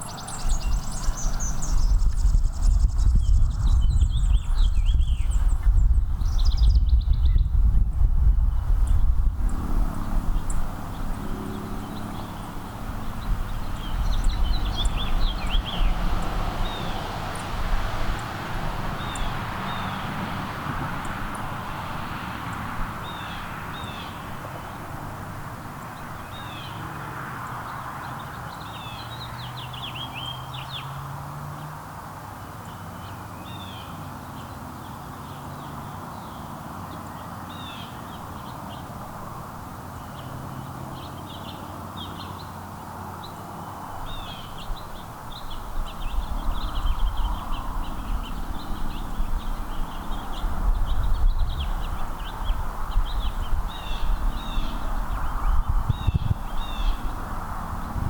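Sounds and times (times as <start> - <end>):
songbirds chirping: 0.0 - 7.6, 8.3 - 58.0
low rumbling noise: 0.0 - 11.3.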